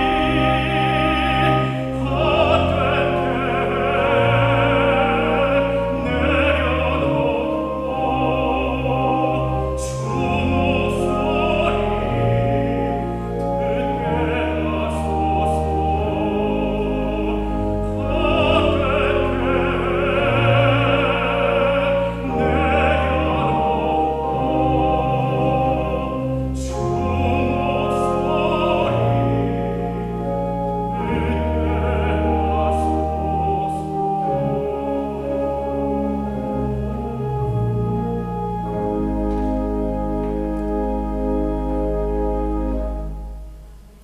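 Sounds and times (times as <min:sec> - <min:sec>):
classical solo voice singing: 0:00.0 - 0:43.4
instrumental accompaniment: 0:00.0 - 0:44.0.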